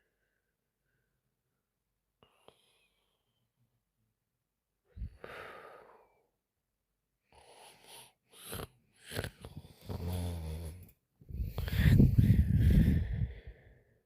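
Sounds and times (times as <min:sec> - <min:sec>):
woman breathing noisily: 0:04.9 - 0:06.2, 0:11.3 - 0:14.0
low buzzing snore: 0:07.4 - 0:10.9.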